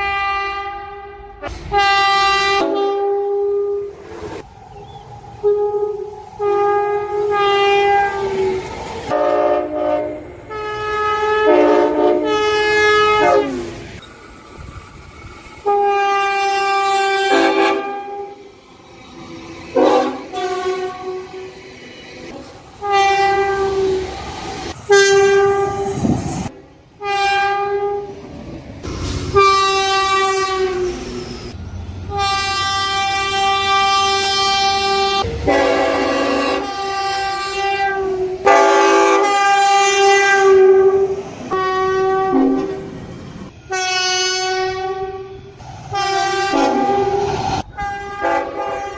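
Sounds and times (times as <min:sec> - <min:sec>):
train horn blasts: 0:00.0 - 0:04.0, 0:05.4 - 0:08.3, 0:09.1 - 0:13.8, 0:15.6 - 0:18.4, 0:19.7 - 0:21.5, 0:22.3 - 0:24.1, 0:24.9 - 0:26.1, 0:27.0 - 0:28.2, 0:29.3 - 0:31.1, 0:32.1 - 0:42.9, 0:43.6 - 0:48.9.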